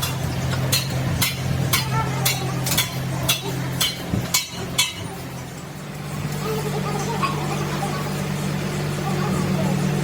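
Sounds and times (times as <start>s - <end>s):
hammer striking metal: 0.0s - 5.1s
machine humming: 0.0s - 10.0s.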